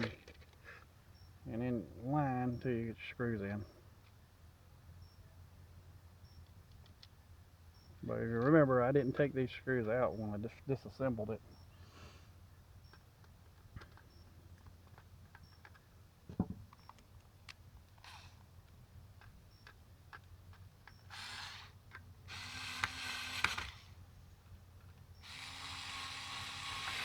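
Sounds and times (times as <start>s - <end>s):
small parts clicking and knocking: 0.0s - 0.7s, 12.8s - 23.9s
electric screwdriver running: 18.0s - 18.4s, 21.1s - 24.0s, 25.2s - 27.0s.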